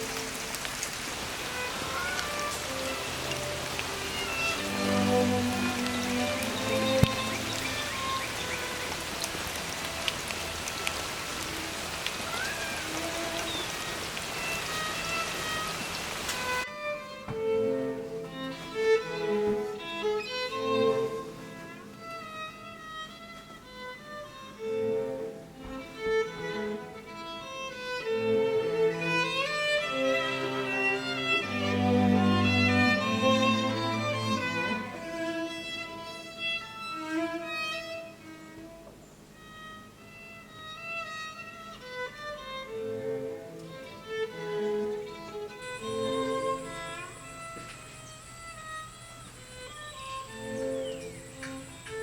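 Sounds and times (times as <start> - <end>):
low strings: 0.0 - 12.0, 24.6 - 38.8
raindrops ticking on surfaces: 0.0 - 16.6, 45.4 - 52.0
steady rain falling: 0.0 - 16.7, 17.4 - 22.4, 24.7 - 39.9, 40.5 - 52.0
string accompaniment: 0.0 - 52.0
violin melody: 0.0 - 52.0.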